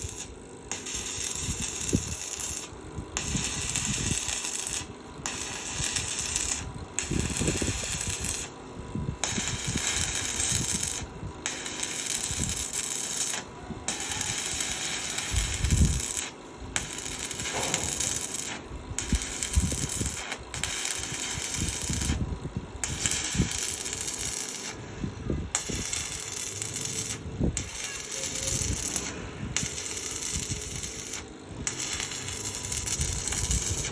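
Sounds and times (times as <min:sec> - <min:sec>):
welding arc crackling: 0:00.0 - 0:33.9.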